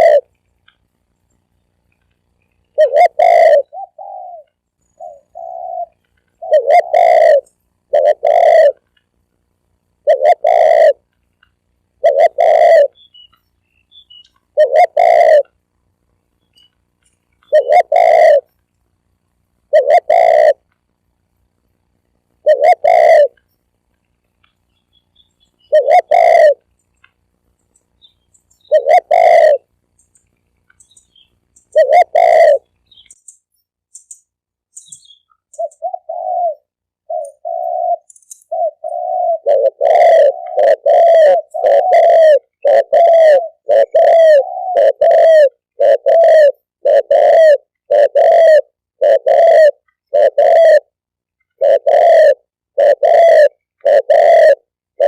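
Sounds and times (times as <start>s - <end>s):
dove cooing: 0.0s - 0.4s, 2.7s - 8.9s, 10.0s - 11.1s, 11.9s - 15.6s, 17.4s - 18.5s, 19.7s - 20.6s, 22.4s - 23.5s, 25.6s - 26.7s, 28.5s - 29.7s, 30.8s - 33.2s, 34.9s - 55.0s.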